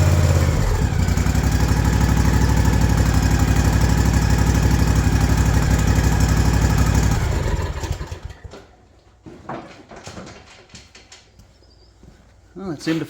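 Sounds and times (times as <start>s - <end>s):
mower engine idling: 0.0s - 8.8s.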